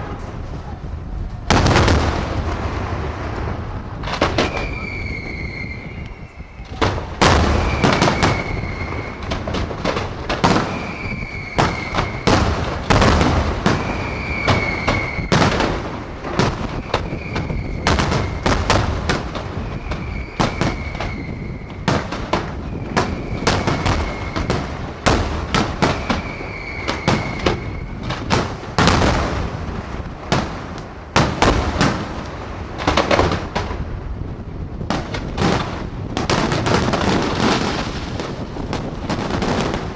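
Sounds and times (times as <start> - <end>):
fireworks bangs and booms: 0.0 - 39.9
high falling whistle: 4.4 - 9.3, 10.7 - 12.4, 13.8 - 15.5, 19.6 - 24.8, 25.8 - 28.0.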